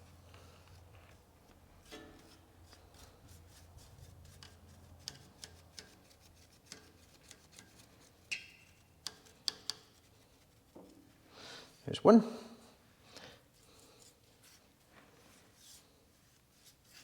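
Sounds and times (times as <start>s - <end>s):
brush clicking and tapping on metal: 1.8s - 11.2s.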